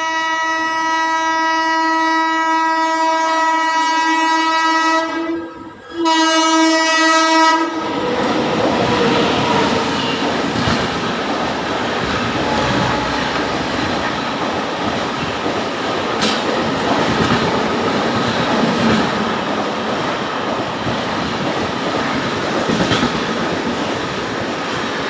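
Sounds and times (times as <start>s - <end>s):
train rushing past: 5.9s - 25.0s.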